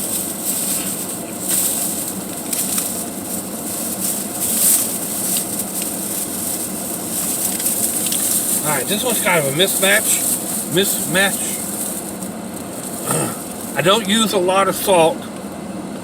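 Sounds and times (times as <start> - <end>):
plastic bags rustling: 0.0 - 14.3
vehicle fan hiss: 0.0 - 16.0.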